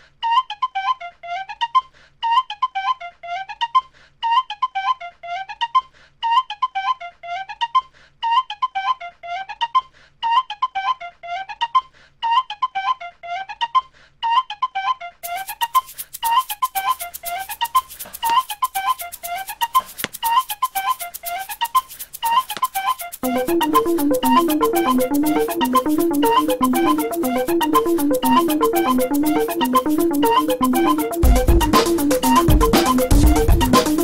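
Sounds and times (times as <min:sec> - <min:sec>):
fast ticking beat: 0:15.2 - 0:34.0
high flute-like melody: 0:22.8 - 0:33.8.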